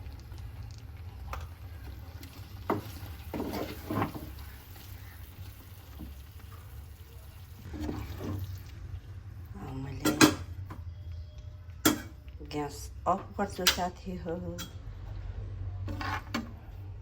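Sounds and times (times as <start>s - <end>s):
spoon stirring in a pan: 1.3s - 6.8s, 15.8s - 16.6s.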